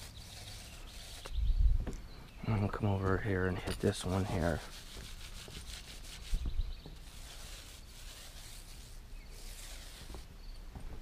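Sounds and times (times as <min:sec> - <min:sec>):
paint roller rasping on wood: 0:00.0 - 0:01.4, 0:04.0 - 0:10.3.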